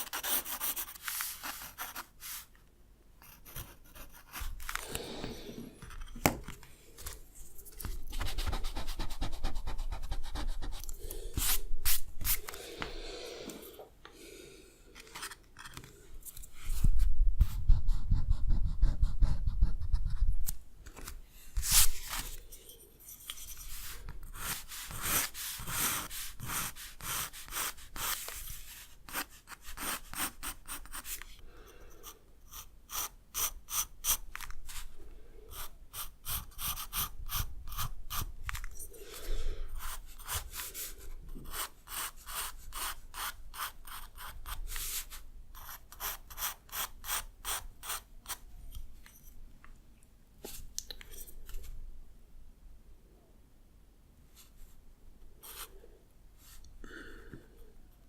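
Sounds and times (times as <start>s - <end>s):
drawing tool rasping on paper: 0.0s - 2.5s, 3.2s - 4.9s, 23.4s - 31.2s, 32.0s - 34.2s, 35.5s - 38.3s, 39.8s - 48.4s.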